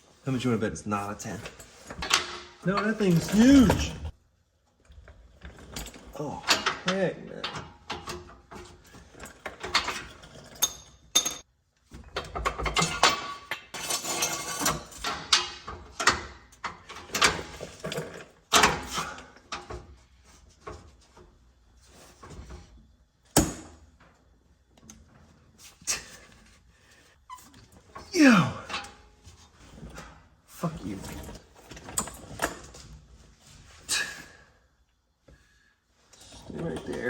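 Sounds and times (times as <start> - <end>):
wrench and sockets clanking: 1.4 - 4.1, 5.5 - 11.5, 12.2 - 19.8.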